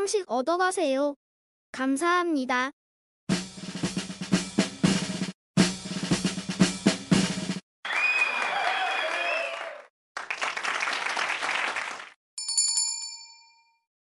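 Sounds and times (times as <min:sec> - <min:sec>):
drum roll: 0:03.3 - 0:07.6
crowd applause and cheering: 0:07.8 - 0:12.2
bright bell chime: 0:12.4 - 0:13.8.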